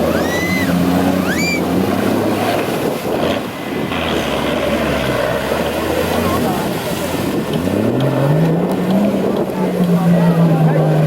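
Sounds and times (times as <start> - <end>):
short rising shrill sounds: 0.0 - 1.7
wind on microphone: 0.0 - 5.1.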